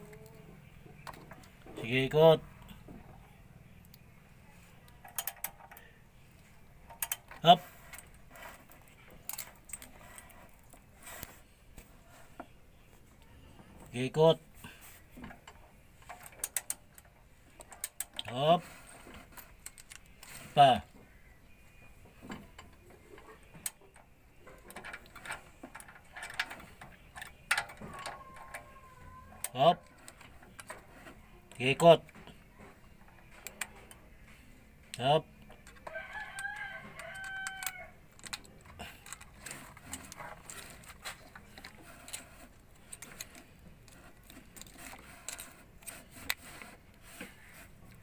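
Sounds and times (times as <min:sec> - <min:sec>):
hand tools clicking on metal: 0:05.0 - 0:05.8.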